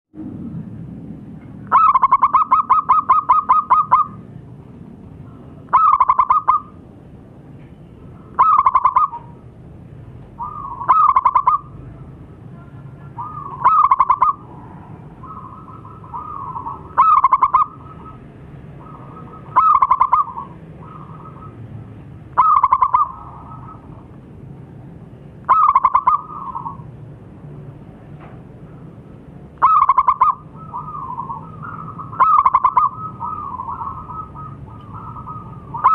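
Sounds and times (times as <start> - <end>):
dove cooing: 1.7 - 4.2, 5.7 - 6.8, 8.4 - 9.4, 10.4 - 11.8, 13.1 - 21.7, 22.4 - 24.1, 25.5 - 26.9, 29.6 - 35.9.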